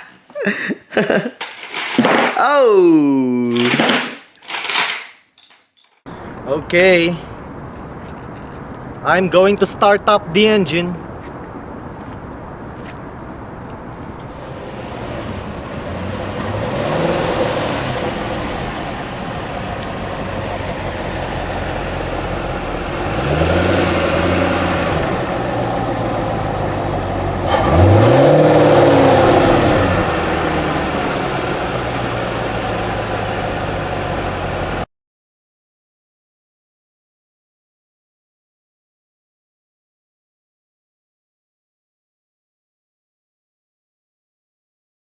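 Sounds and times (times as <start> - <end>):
car engine revving: 11.0 - 34.8.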